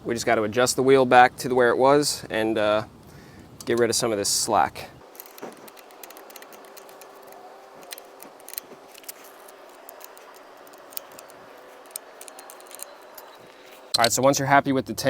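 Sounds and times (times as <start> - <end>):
faint steady hum: 0.0 - 15.0
hand tools clicking and tapping: 5.0 - 14.2.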